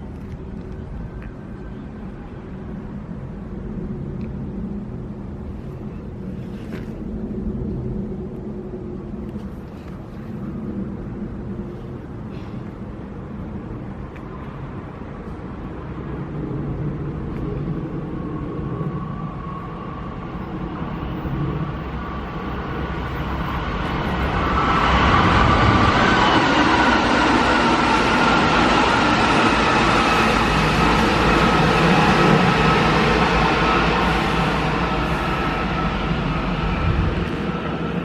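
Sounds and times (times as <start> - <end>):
electric train whine: 10.0 - 38.0
train wheels rumbling on rails: 16.8 - 38.0.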